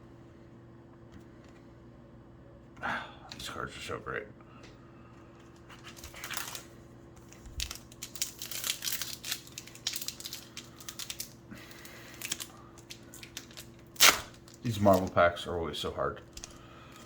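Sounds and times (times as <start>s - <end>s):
faint steady hum: 0.0s - 17.0s
wrapper crinkling and tearing: 5.6s - 15.2s.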